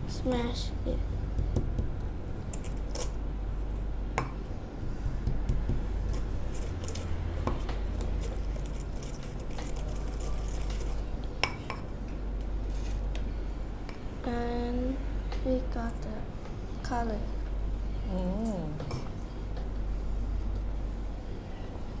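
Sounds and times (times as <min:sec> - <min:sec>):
pestle pounding in mortar: 0:05.1 - 0:05.9.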